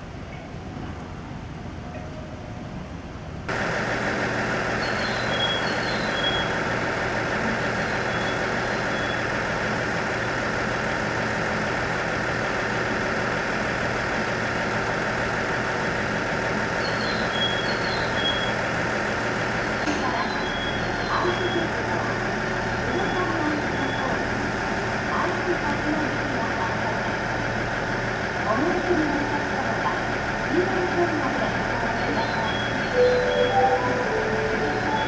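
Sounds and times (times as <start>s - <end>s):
engine idling: 3.5s - 35.0s
faint short high chirps: 32.2s - 35.0s.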